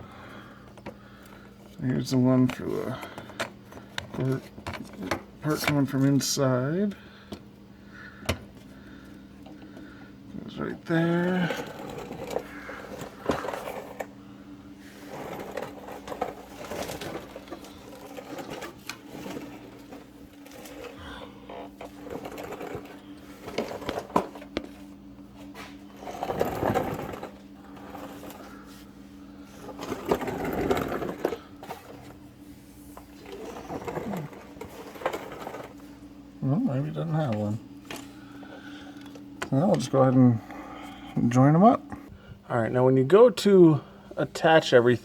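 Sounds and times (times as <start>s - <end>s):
steady low hum: 0.0s - 45.0s
rustling and scraping: 11.3s - 14.1s, 14.8s - 36.1s.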